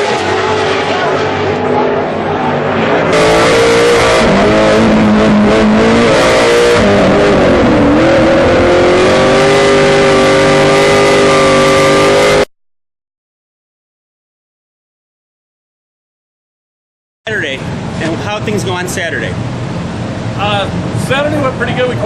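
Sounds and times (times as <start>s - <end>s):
race truck engines at high revs: 0.0s - 12.5s.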